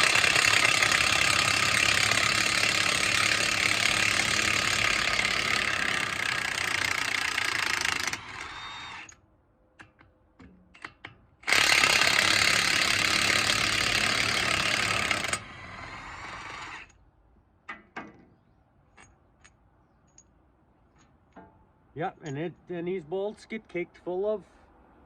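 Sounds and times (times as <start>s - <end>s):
metallic clicks of socket and bolts: 22.2s - 22.7s.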